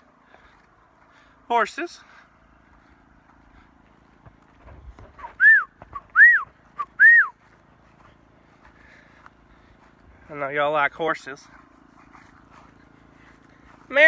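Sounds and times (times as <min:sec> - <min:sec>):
person whistling: 0:05.4 - 0:07.4.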